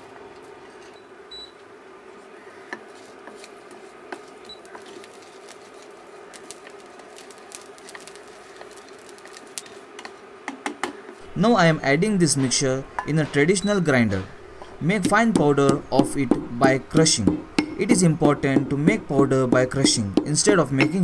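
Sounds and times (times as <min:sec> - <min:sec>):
steady low hum: 0:00.0 - 0:21.0
spices popping in a pan: 0:03.2 - 0:10.0.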